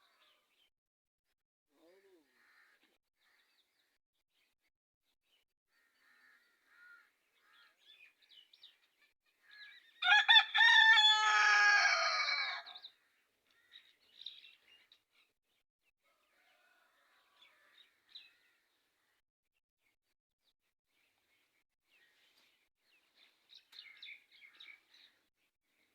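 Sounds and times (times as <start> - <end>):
rooster crowing: 10.0 - 12.8, 16.0 - 17.7.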